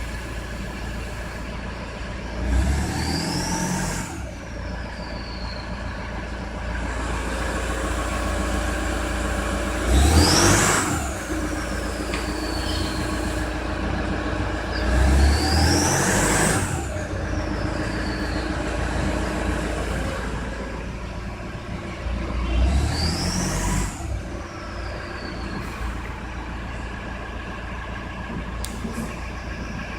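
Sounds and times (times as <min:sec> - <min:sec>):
diesel engine idling and revving: 0:00.0 - 0:29.9
turbocharger whistle: 0:02.3 - 0:06.2, 0:07.4 - 0:20.3, 0:22.4 - 0:26.2.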